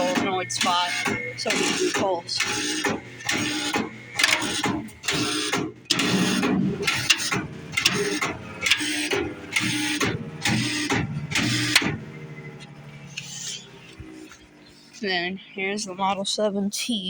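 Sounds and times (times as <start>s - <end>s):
pulsing siren air bursts: 0.0s - 15.0s.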